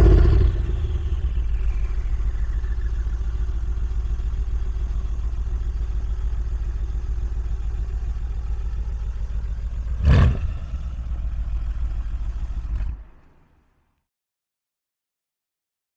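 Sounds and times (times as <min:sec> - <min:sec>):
loud engine burst: 0:00.0 - 0:03.4, 0:09.8 - 0:11.6
car engine idling: 0:00.0 - 0:13.9.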